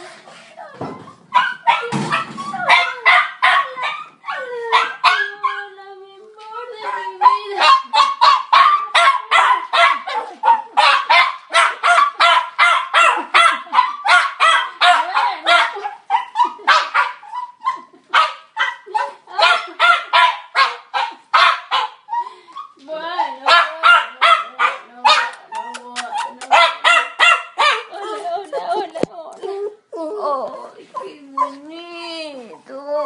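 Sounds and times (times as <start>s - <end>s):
dog yelping and whining: 0.5s - 5.7s, 6.8s - 24.0s, 29.4s - 33.0s.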